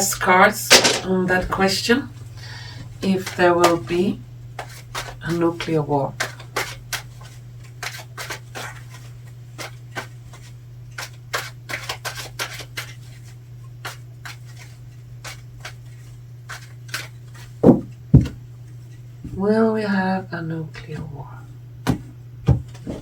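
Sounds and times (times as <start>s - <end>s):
steady low hum: 0.0s - 12.1s, 12.8s - 23.0s
cards being shuffled: 0.7s - 1.2s, 3.0s - 3.9s, 4.6s - 17.6s.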